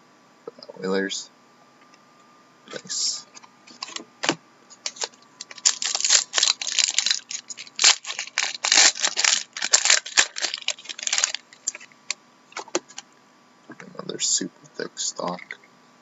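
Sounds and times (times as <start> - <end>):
trading cards clicking and rustling: 3.7 - 12.0, 12.6 - 13.0.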